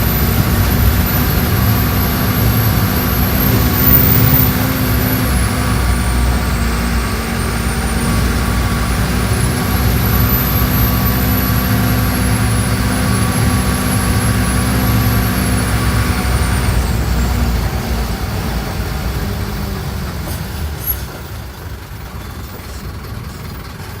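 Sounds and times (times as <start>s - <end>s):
high whine: 0.0s - 17.3s
diesel bus engine running: 0.0s - 24.0s.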